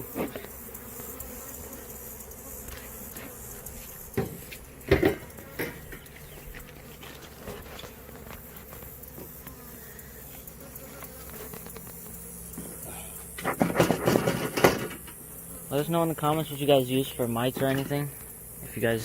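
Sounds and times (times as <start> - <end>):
honey bees buzzing: 0.0 - 19.0
sharp knocks: 4.1 - 6.1, 13.4 - 15.1.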